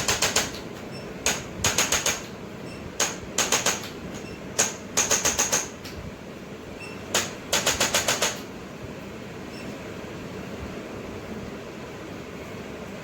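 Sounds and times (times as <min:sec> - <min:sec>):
sharp mechanical clicking: 0:00.0 - 0:02.4, 0:03.0 - 0:06.0, 0:07.1 - 0:08.5.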